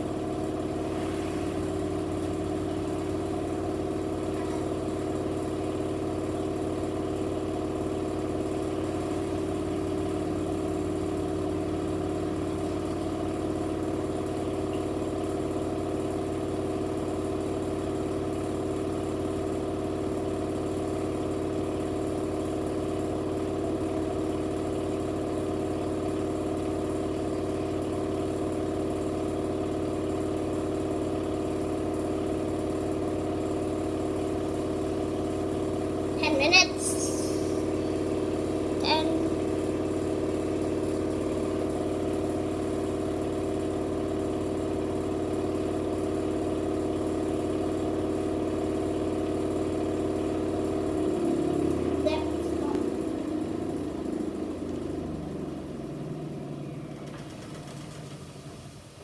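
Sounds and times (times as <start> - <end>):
washing machine spin cycle: 0.0 - 59.0.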